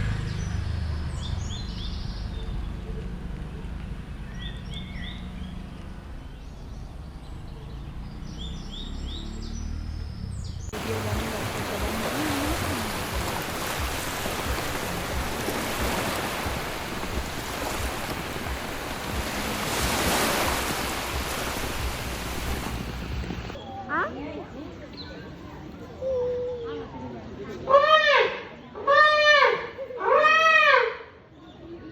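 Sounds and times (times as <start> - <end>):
bird chirps: 4.2 - 10.8
running water rushing: 10.7 - 23.6.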